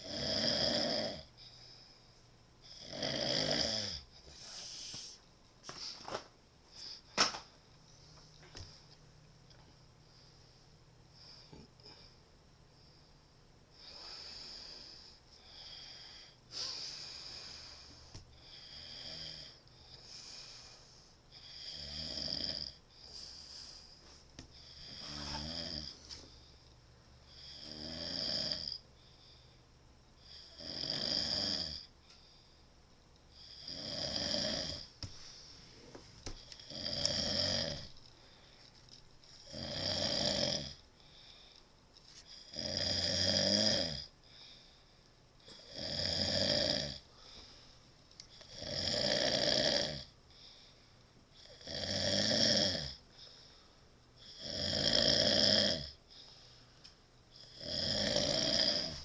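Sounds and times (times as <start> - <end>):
person snoring loudly: 0.0 - 1.3, 2.7 - 4.0, 18.5 - 19.6, 21.4 - 22.8, 24.7 - 26.0, 27.3 - 28.8, 30.3 - 31.9, 33.4 - 34.9, 36.6 - 37.9, 39.4 - 40.8, 42.4 - 44.1, 45.6 - 47.0, 48.4 - 50.1, 51.4 - 53.0, 54.2 - 56.0, 57.4 - 59.0.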